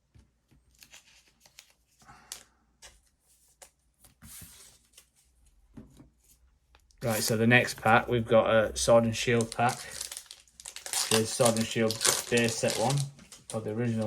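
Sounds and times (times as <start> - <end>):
cards and wrappers rustling: 0.6 - 5.4, 7.0 - 8.1, 8.7 - 14.0.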